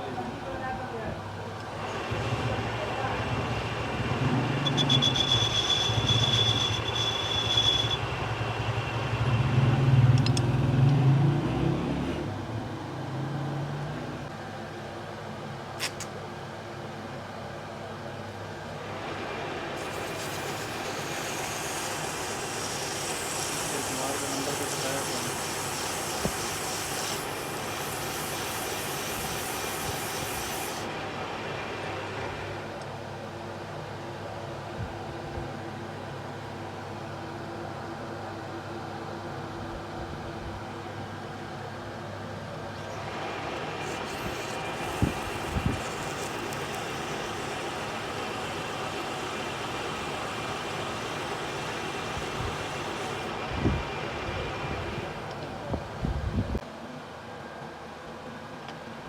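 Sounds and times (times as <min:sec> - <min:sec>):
mechanical running noise: 0:01.7 - 0:11.3, 0:18.8 - 0:32.8, 0:42.8 - 0:55.4
metal lathe humming: 0:01.8 - 0:09.5, 0:18.8 - 0:32.7, 0:42.8 - 0:53.4
cutting tool squealing on metal: 0:04.6 - 0:08.1
sharp clicks: 0:10.1 - 0:11.0
high hiss: 0:19.8 - 0:30.9, 0:43.7 - 0:53.3.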